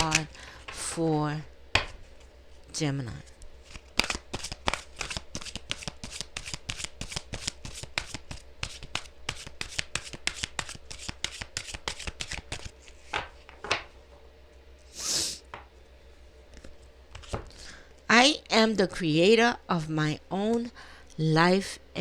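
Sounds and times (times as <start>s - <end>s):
cards being shuffled: 0.0s - 1.0s, 3.2s - 13.6s, 16.6s - 17.6s.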